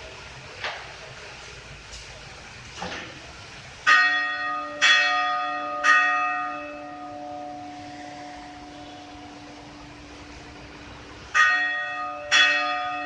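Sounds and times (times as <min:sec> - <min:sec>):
church bell ringing: 0:03.8 - 0:10.6, 0:11.3 - 0:13.0.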